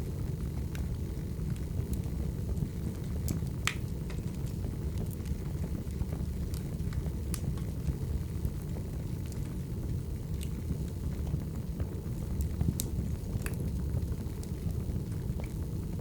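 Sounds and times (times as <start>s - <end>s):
low rumble of burning logs: 0.0s - 16.0s
wood fire crackling: 0.0s - 16.0s.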